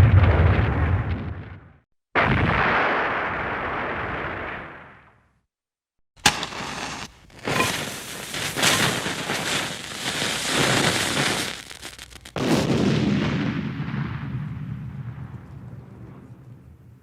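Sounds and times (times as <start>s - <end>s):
loud blast with rumble: 12.3s - 16.8s.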